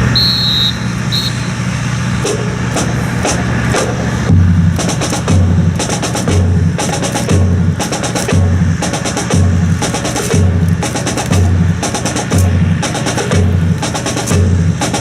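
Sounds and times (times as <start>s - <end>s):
brief high tone: 0.0s - 1.7s
snare drum strokes: 0.0s - 15.0s
steady low hum: 0.0s - 15.0s
bass drum strikes: 2.3s - 15.0s.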